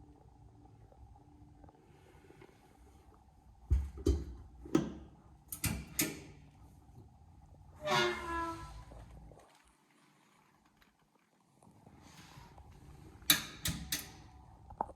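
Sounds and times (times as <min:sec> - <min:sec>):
door creaking: 0:07.8 - 0:09.0.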